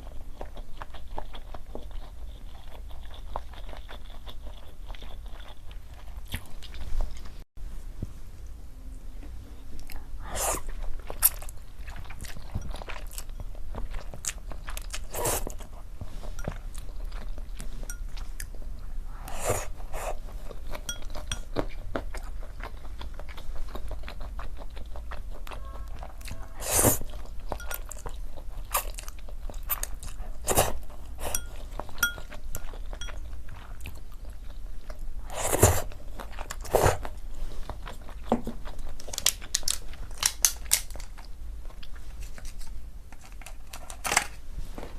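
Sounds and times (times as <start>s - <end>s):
wet chewing: 0.0s - 7.4s, 9.8s - 42.8s
loud food crunch: 37.8s - 41.3s.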